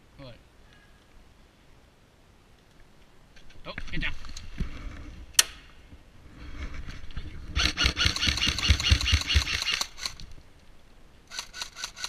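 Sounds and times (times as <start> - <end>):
airsoft gun firing full auto: 7.6 - 10.2, 11.3 - 12.0.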